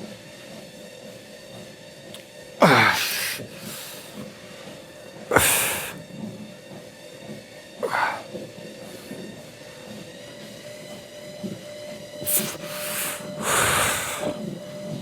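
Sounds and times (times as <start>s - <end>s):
man grunting: 2.6s - 4.1s, 5.3s - 6.0s, 7.8s - 8.3s, 12.3s - 14.3s
man exhaling hard: 2.6s - 4.2s, 5.3s - 6.0s, 7.8s - 8.3s, 12.2s - 14.4s.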